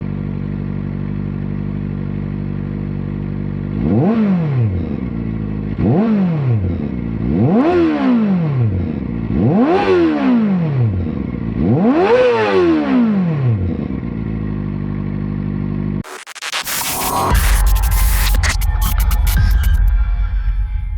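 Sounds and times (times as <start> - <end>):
motorcycle engine idling and revving: 0.0 - 16.0.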